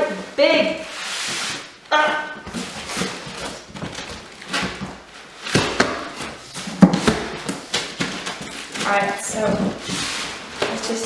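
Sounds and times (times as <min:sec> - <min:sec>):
cardboard box scraping and rustling: 0:02.4 - 0:11.0.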